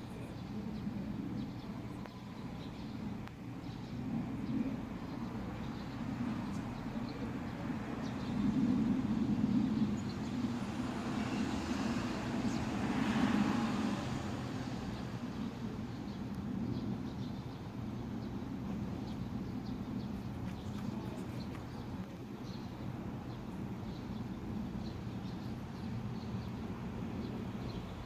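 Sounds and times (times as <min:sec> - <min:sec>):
road traffic rumble: 0:00.0 - 0:28.0
vehicle passing: 0:04.9 - 0:16.4.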